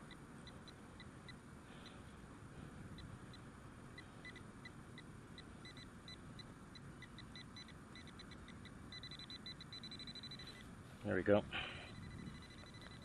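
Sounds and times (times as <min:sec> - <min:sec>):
metal detector high beeps: 0:04.0 - 0:10.7, 0:11.6 - 0:13.0.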